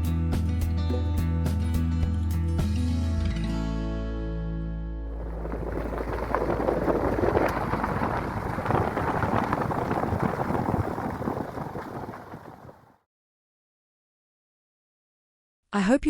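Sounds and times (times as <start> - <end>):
rushing water: 5.1 - 12.9.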